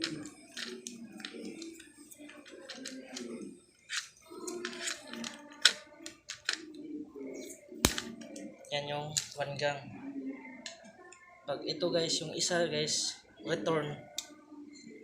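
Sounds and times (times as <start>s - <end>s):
wires and hand tools clicking: 0.0s - 6.6s
faint murmur of voices: 0.0s - 15.0s.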